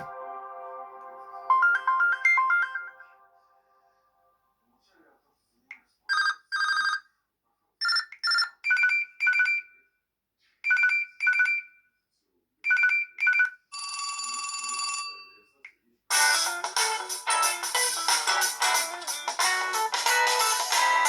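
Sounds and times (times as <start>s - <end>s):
musical ringtone with guitar: 0.0s - 3.5s, 16.1s - 21.0s
trilling electronic phone ringtone: 1.5s - 3.1s, 6.1s - 7.0s, 13.8s - 15.3s.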